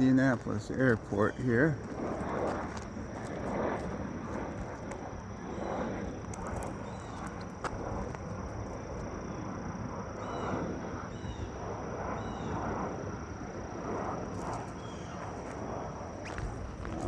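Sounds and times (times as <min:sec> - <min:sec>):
footsteps: 0:00.0 - 0:05.0, 0:16.2 - 0:17.0
high-pitched insect chorus: 0:00.0 - 0:17.0.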